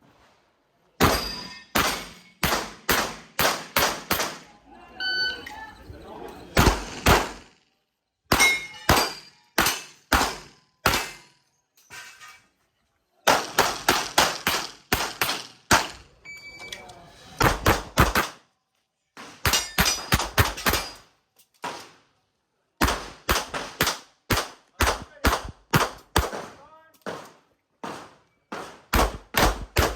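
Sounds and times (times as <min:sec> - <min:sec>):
pistol shots: 0:01.0 - 0:04.5, 0:06.6 - 0:07.5, 0:08.3 - 0:11.2, 0:13.3 - 0:16.0, 0:17.4 - 0:18.4, 0:22.8 - 0:29.9
metallic ring: 0:01.1 - 0:02.4, 0:08.4 - 0:09.6.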